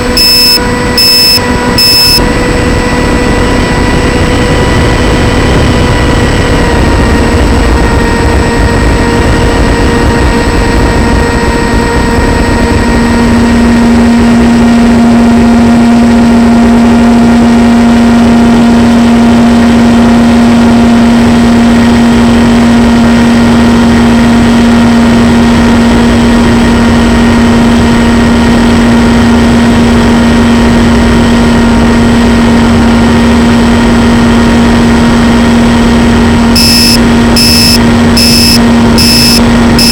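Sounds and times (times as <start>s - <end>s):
model plane motor humming: 0.0s - 15.0s, 33.8s - 39.9s.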